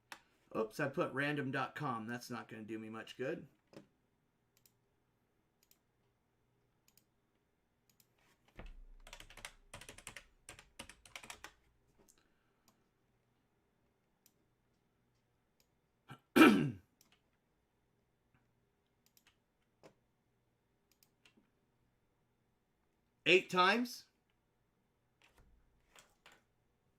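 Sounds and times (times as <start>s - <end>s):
keyboard typing: 7.9s - 12.2s.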